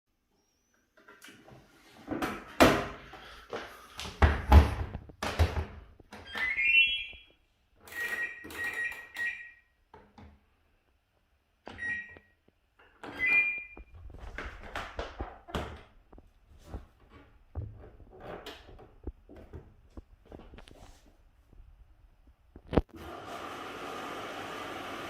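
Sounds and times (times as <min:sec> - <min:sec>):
short high electronic beeps: 0:06.4 - 0:07.3.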